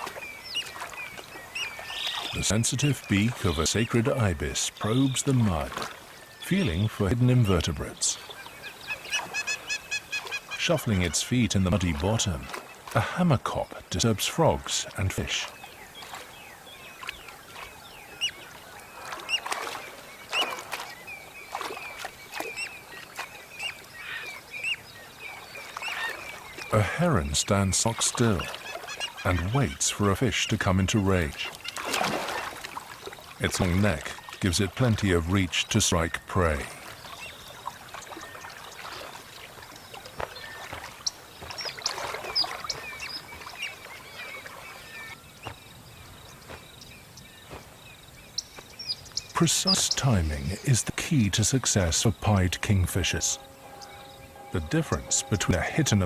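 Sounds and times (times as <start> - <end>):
splashes in water: 0.0 - 7.0, 7.6 - 35.3, 35.9 - 45.7
waterbirds calling: 0.0 - 56.0.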